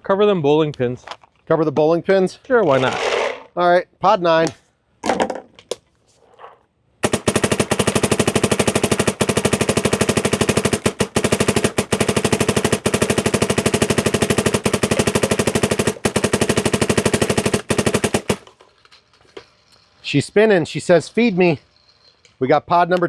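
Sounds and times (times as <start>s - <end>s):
paintball marker firing rapidly: 7.0s - 18.5s.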